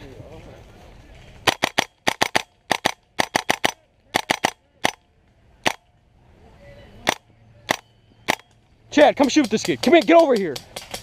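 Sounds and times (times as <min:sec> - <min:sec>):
airsoft gun shots: 0:01.5 - 0:05.0, 0:07.0 - 0:08.6.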